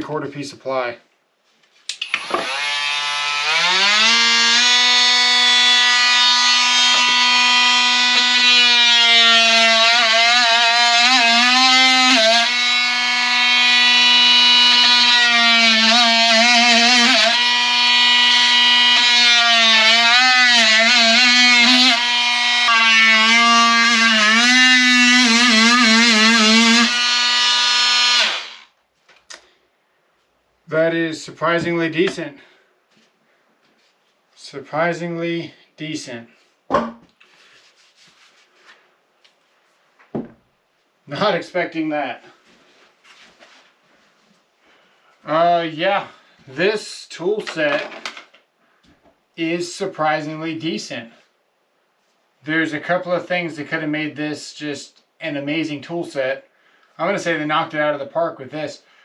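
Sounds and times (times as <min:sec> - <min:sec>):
oscillating multi-tool cutting wood: 0:01.9 - 0:28.8.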